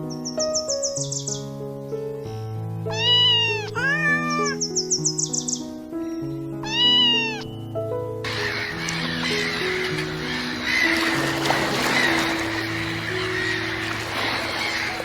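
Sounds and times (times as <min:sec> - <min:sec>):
soft background music: 0:00.0 - 0:15.0
cat meowing: 0:02.9 - 0:04.7, 0:06.6 - 0:07.5.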